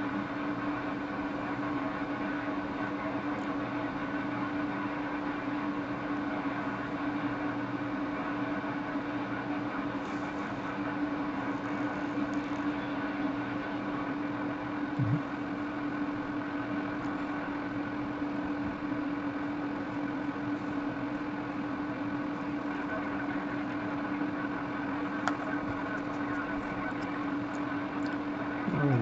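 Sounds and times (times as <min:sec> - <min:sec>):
machine hum: 0:10.0 - 0:17.6, 0:18.5 - 0:29.0.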